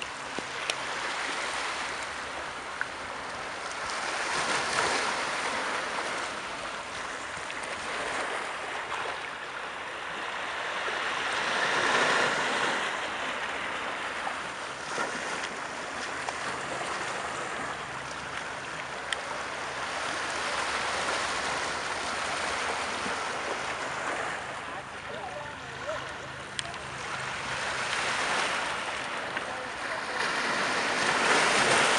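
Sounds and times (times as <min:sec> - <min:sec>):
sea waves washing in: 0:00.0 - 0:31.9.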